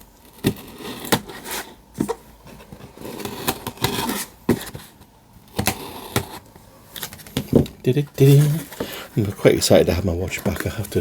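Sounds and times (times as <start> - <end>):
cardboard tearing and rustling: 0.3 - 5.0.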